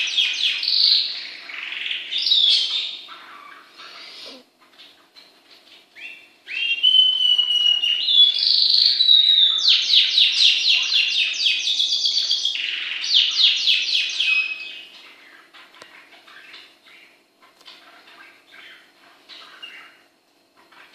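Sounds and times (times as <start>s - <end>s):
cockatiel whistling: 6.0s - 10.0s.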